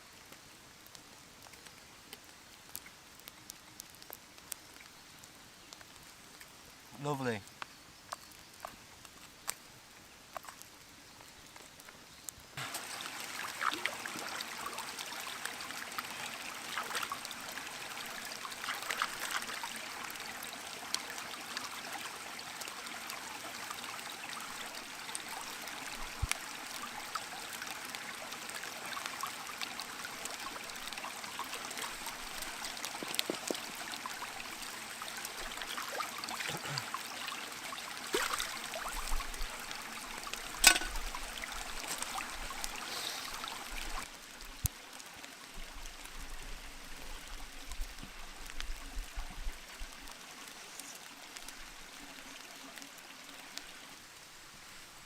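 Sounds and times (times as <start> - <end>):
small water drips: 0.1 - 54.3
water trickling: 12.6 - 54.3.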